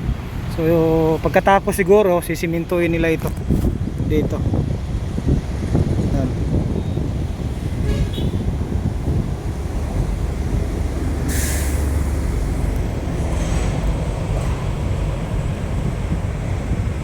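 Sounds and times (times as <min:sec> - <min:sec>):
road traffic rumble: 0:00.0 - 0:17.0
short hiss: 0:11.2 - 0:13.8.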